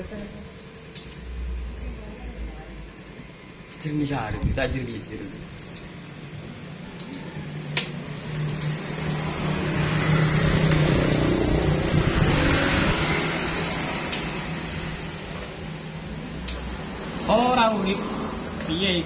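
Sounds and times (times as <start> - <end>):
motor vehicle passing: 7.4 - 19.0.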